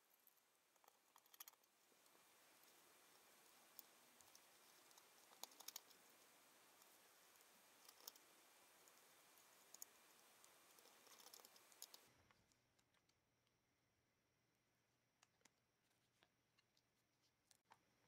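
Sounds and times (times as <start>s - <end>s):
background hiss: 0.0s - 12.7s
faint clicks and taps: 0.0s - 13.6s, 15.1s - 18.0s.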